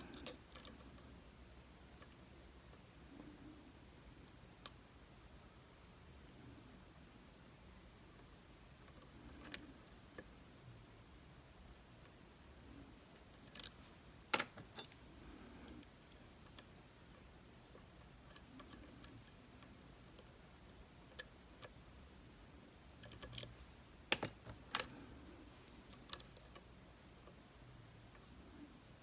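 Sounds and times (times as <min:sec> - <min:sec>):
lock-picking tools clicking: 0:00.0 - 0:01.0, 0:22.9 - 0:25.2.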